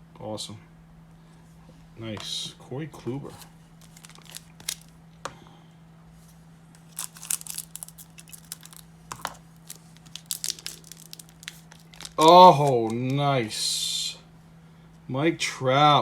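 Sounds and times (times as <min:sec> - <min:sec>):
plastic and foil crinkling: 0:03.8 - 0:05.0, 0:06.8 - 0:13.2.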